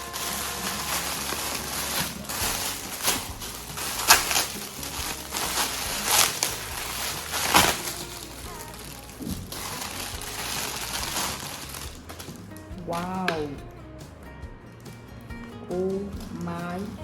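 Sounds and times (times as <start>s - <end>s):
packaging crinkling and rustling: 0.0s - 12.6s
paper ripping: 0.0s - 13.0s.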